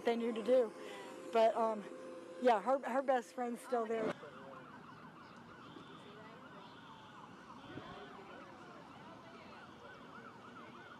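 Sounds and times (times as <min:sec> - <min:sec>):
emergency vehicle sirens wailing: 0:03.9 - 0:10.9.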